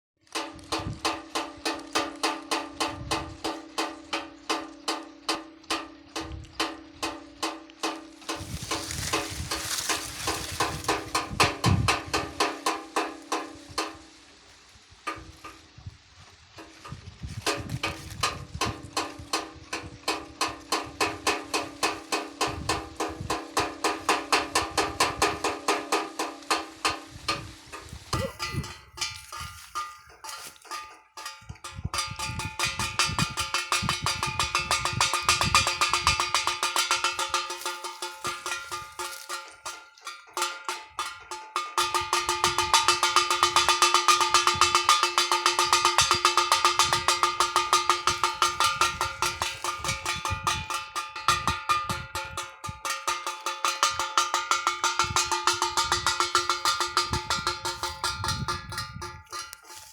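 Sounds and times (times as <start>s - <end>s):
metal clapper clanging: 34.4s - 59.9s.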